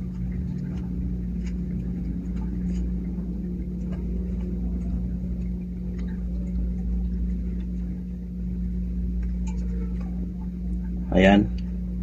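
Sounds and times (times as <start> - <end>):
light rubbing: 0.0 - 8.2
low electrical hum: 0.0 - 12.0
small fan parts clicking: 0.0 - 12.0.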